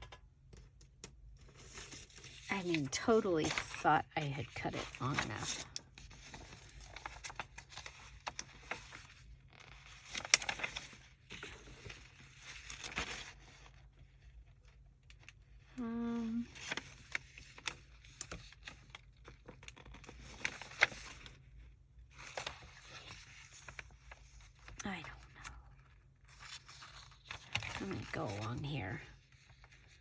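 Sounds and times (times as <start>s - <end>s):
paper rustling and crinkling: 1.4s - 15.4s, 16.5s - 30.0s.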